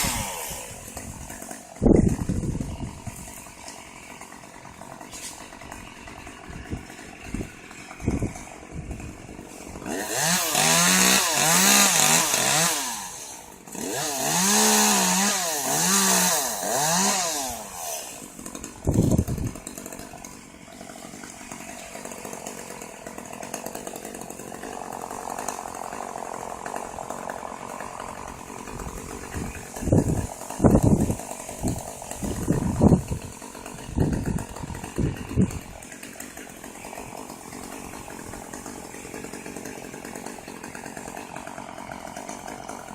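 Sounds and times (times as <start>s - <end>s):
chainsaw revving: 0.0s - 42.9s.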